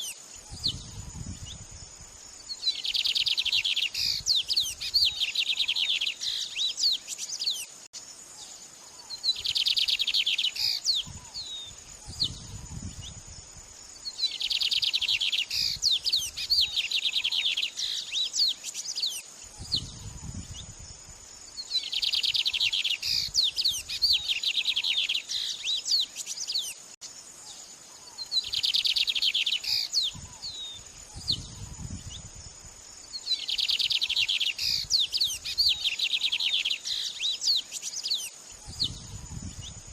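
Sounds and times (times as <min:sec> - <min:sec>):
bird chirps: 0:00.0 - 0:01.7, 0:02.5 - 0:13.2, 0:14.0 - 0:20.7, 0:21.5 - 0:32.3, 0:33.1 - 0:39.9
high insect-like whine: 0:00.0 - 0:39.9
songbird trilling: 0:02.5 - 0:07.7, 0:09.0 - 0:13.2, 0:14.1 - 0:20.7, 0:21.6 - 0:26.8, 0:28.0 - 0:32.2, 0:33.2 - 0:39.8.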